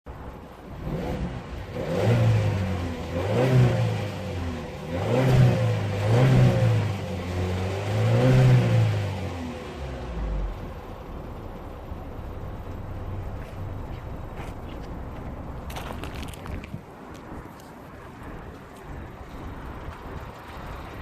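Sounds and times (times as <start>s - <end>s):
car engine revving: 0.6s - 14.0s.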